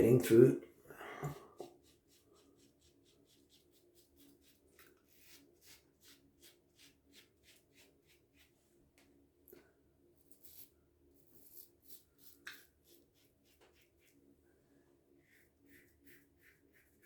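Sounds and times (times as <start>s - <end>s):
razor scraping stubble: 10.3s - 10.7s, 11.3s - 14.1s.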